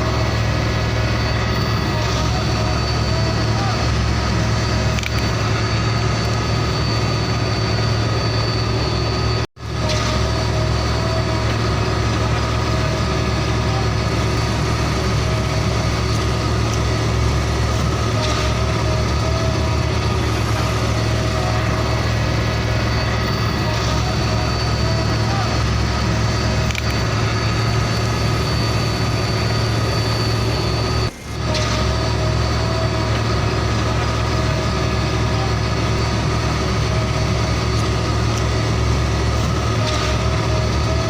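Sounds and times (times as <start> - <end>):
truck engine idling: 10.4 - 41.0.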